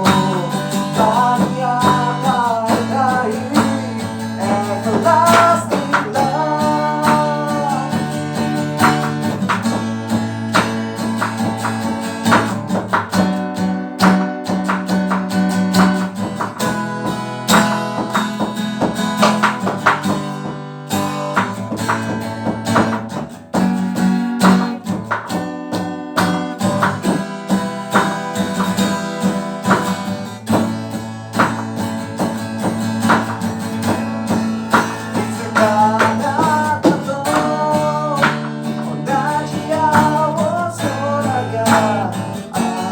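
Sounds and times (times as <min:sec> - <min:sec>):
drum kit: 0:00.0 - 0:42.9
guitar: 0:00.0 - 0:42.9.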